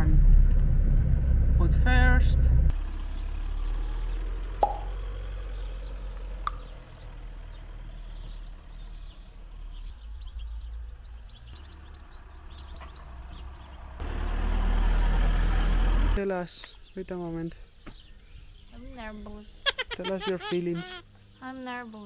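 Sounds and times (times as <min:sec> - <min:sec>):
car rumble: 0:00.0 - 0:16.2.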